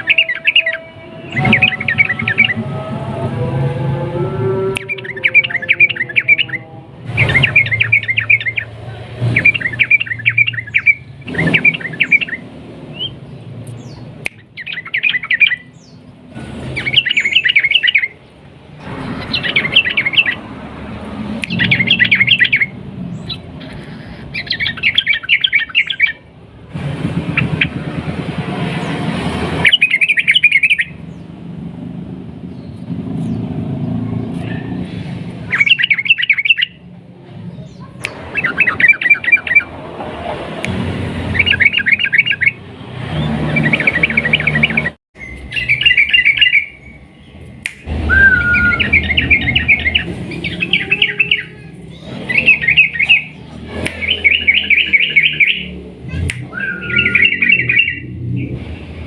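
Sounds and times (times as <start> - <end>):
bird chattering trills: 0.0 - 2.7, 4.8 - 18.2, 21.5 - 26.2, 43.2 - 58.2.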